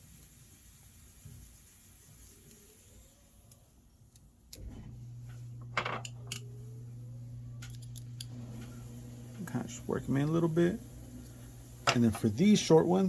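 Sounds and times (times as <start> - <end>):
low steady hum: 4.5 - 13.0.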